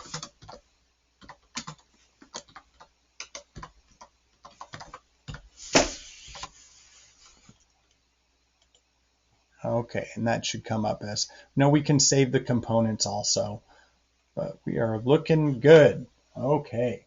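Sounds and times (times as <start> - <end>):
keyboard keys clicking: 1.2 - 5.4
loud rustling noise: 5.5 - 7.6.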